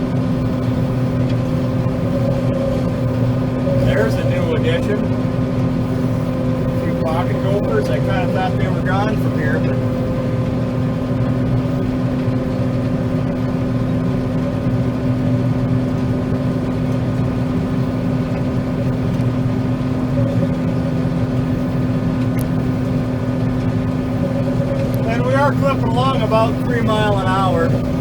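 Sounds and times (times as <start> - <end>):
combine harvester droning: 0.0 - 28.0.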